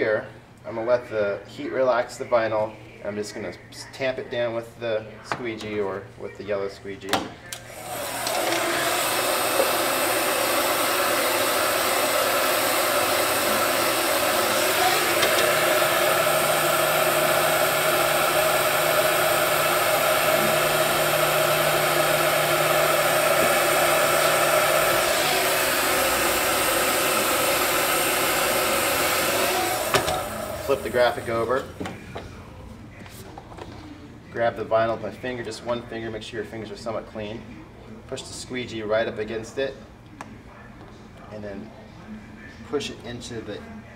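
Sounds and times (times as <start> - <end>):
heat gun blowing: 7.6 - 31.3.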